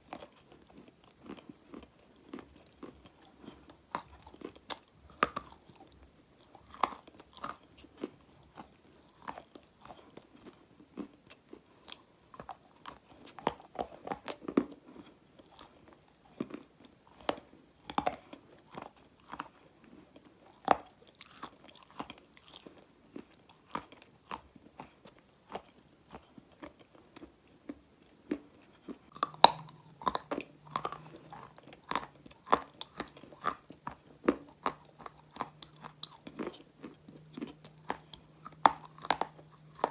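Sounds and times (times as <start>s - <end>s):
dry clay crunching when chewed: 0.0s - 39.9s.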